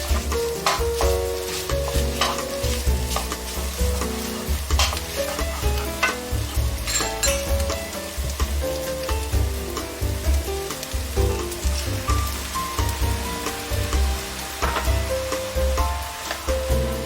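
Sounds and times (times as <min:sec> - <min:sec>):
utensil clinking on pan: 0:00.0 - 0:07.8
background music with steady beat: 0:00.0 - 0:17.0
food sizzling in a frying pan: 0:00.0 - 0:17.0.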